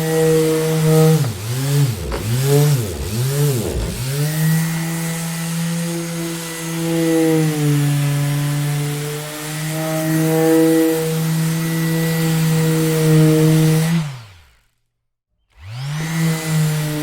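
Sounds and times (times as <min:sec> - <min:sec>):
orbital sander motor hum: 0:00.0 - 0:05.0.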